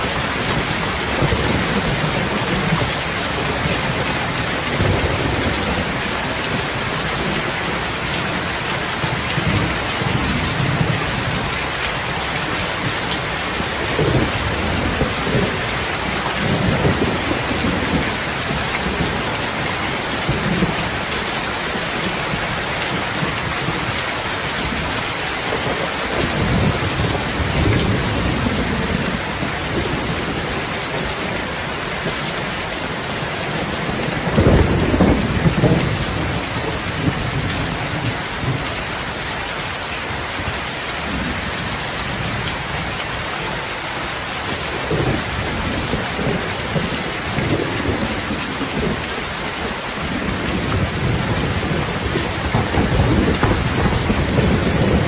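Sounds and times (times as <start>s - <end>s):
heavy rain falling: 0.0s - 55.0s
low rolls of thunder: 33.4s - 38.7s, 50.0s - 55.0s.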